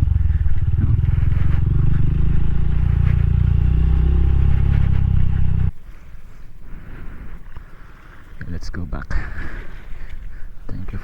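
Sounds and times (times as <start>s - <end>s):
motorcycle engine running: 0.0s - 5.8s
faint low rumble: 0.0s - 5.9s.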